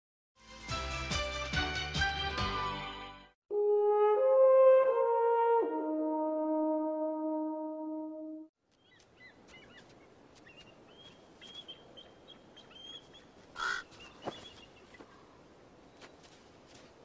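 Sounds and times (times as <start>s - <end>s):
birds chirping: 8.7s - 17.0s
harsh raven call: 13.5s - 14.0s.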